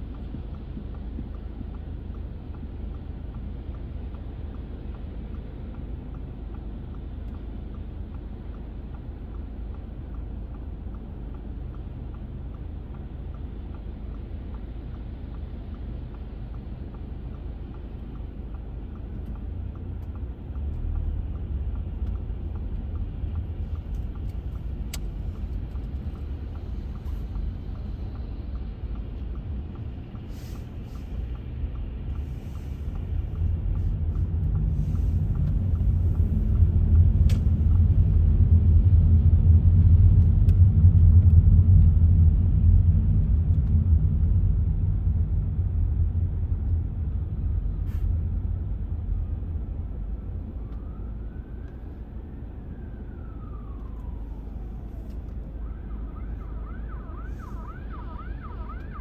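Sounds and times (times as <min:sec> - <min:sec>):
road traffic rumble: 0:00.0 - 0:59.0
siren warbling: 0:55.6 - 0:59.0.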